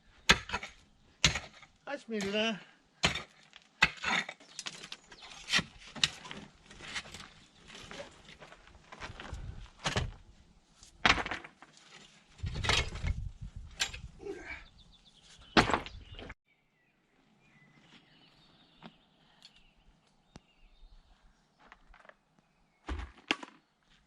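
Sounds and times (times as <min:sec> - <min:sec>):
rustling thumps and scrapes: 0:03.3 - 0:14.2.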